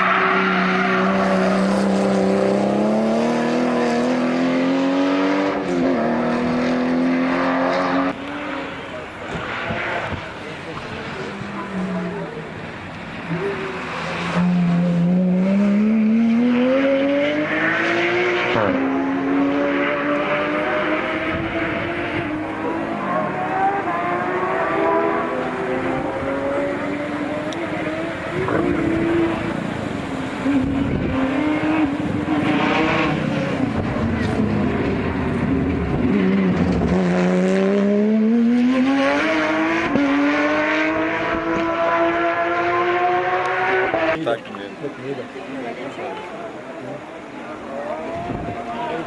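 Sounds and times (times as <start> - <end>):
car engine accelerating hard: 13.2 - 44.4.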